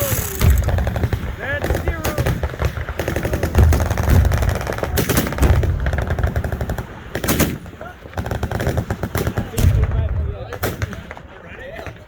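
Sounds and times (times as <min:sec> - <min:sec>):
automatic machine-gun fire: 0:00.0 - 0:07.6.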